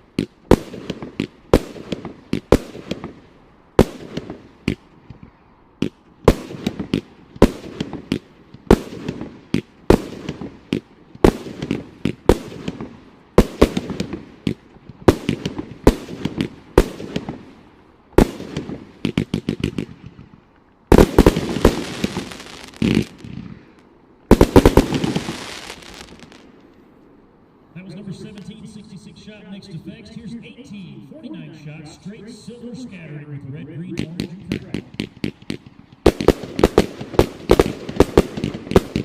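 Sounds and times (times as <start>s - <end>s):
fireworks shots firing: 0.1s - 17.6s, 18.2s - 26.5s, 33.8s - 39.0s.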